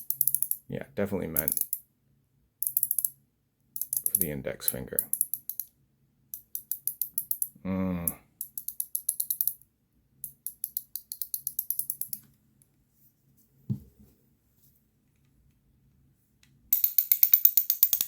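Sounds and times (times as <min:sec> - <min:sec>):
ring fidget ratchet clicks: 0:00.0 - 0:00.6, 0:01.4 - 0:01.8, 0:02.6 - 0:03.2, 0:03.8 - 0:04.3, 0:05.0 - 0:05.7, 0:06.4 - 0:07.6, 0:08.4 - 0:09.6, 0:10.2 - 0:12.2, 0:16.7 - 0:18.0
person humming: 0:07.6 - 0:08.2.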